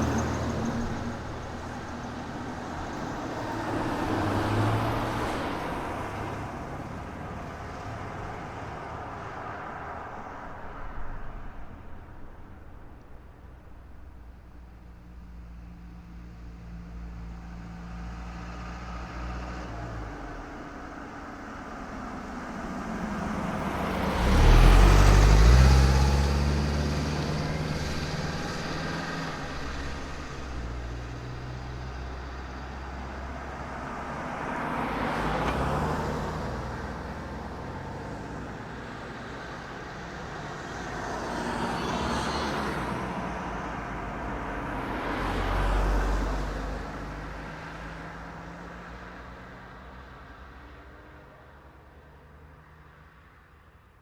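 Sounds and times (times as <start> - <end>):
low engine hum: 0.0 - 41.7
vehicles passing by: 0.0 - 54.0.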